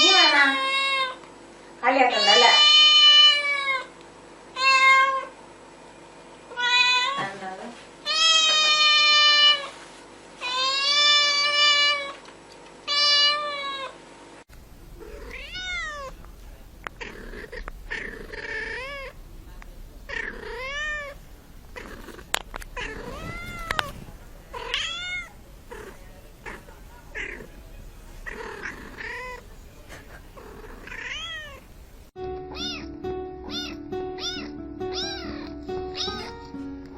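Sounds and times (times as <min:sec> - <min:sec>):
cat meowing: 0:02.1 - 0:03.9, 0:04.6 - 0:05.3, 0:06.5 - 0:07.3, 0:08.1 - 0:09.7, 0:10.4 - 0:12.2, 0:12.9 - 0:13.9, 0:15.0 - 0:16.2, 0:16.9 - 0:19.2, 0:20.1 - 0:21.2, 0:21.8 - 0:27.6, 0:28.2 - 0:29.6, 0:30.4 - 0:31.7, 0:32.5 - 0:36.4
kitten mewing: 0:15.0 - 0:31.7, 0:32.5 - 0:32.9, 0:33.5 - 0:36.4.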